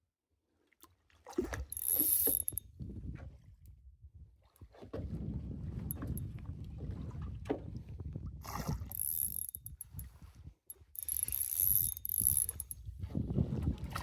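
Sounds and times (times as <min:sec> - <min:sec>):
fishing reel ratcheting whir: 0:01.7 - 0:02.6, 0:05.9 - 0:06.2, 0:08.8 - 0:10.1, 0:10.7 - 0:12.8.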